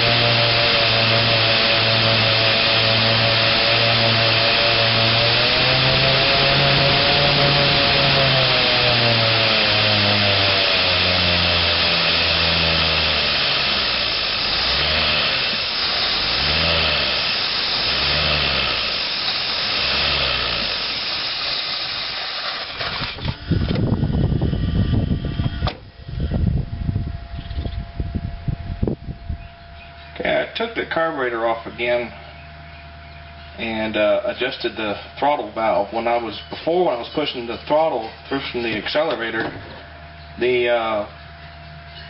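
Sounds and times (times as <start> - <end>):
low rumbling bursts: 22.7 - 42.0.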